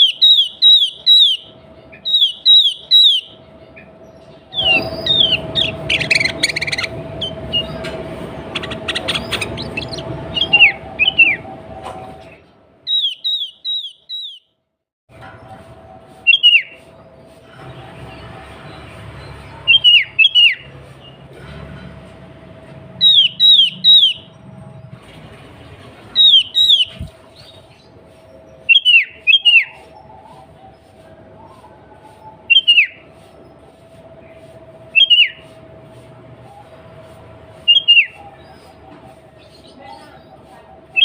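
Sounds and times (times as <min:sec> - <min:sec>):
bird calling sharp notes: 0:00.0 - 0:14.5, 0:16.2 - 0:16.9, 0:19.6 - 0:21.2, 0:23.0 - 0:24.5, 0:26.1 - 0:33.3, 0:34.9 - 0:35.6, 0:37.6 - 0:39.0.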